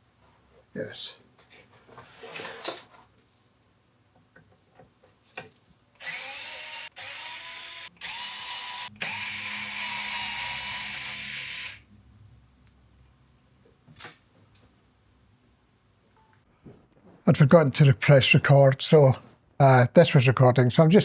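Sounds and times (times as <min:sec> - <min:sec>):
electric screwdriver whining: 0:06.0 - 0:11.8.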